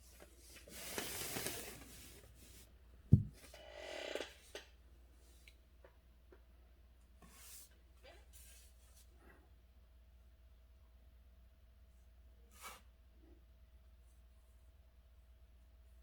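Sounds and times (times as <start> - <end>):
paper rustling: 0.1 - 2.6.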